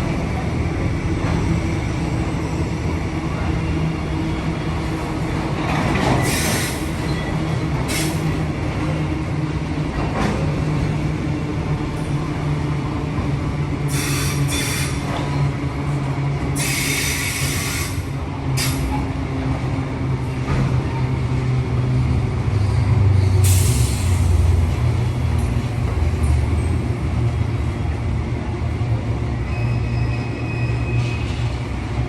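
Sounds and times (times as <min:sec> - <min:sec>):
wheel squeal: 0:29.5 - 0:31.6.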